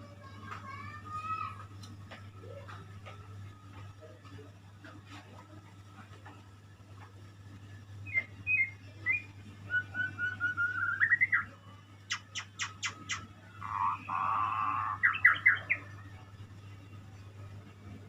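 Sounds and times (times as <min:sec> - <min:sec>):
songbird singing whistled notes: 0:08.0 - 0:15.9
bird harsh rasping call: 0:13.6 - 0:15.9.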